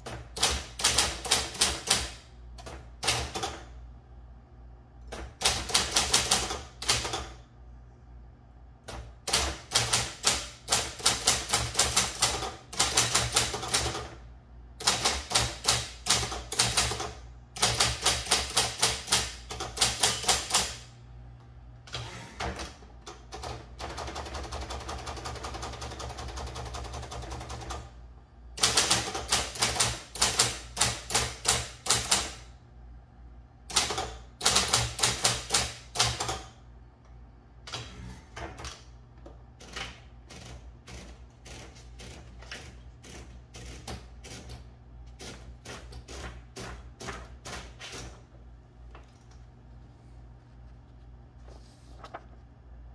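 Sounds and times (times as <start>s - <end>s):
electric typewriter keystrokes: 0.0s - 3.7s, 5.0s - 7.4s, 8.8s - 14.2s, 14.8s - 20.9s, 21.9s - 27.9s, 28.6s - 32.5s, 33.7s - 36.6s, 39.6s - 48.3s
typewriter whirr: 0.0s - 3.8s, 5.1s - 7.4s, 8.8s - 21.0s, 21.8s - 27.9s, 28.6s - 32.5s, 33.6s - 36.6s, 39.6s - 48.4s.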